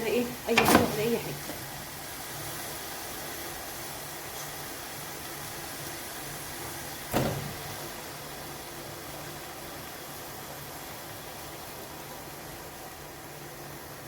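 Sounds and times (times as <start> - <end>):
pot hissing on gas stove: 0.0 - 14.0.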